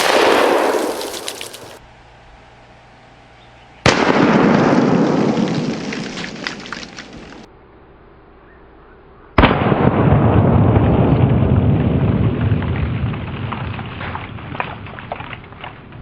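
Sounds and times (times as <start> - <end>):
shotgun blast: 0.0 - 1.8, 3.8 - 7.5, 9.4 - 11.2.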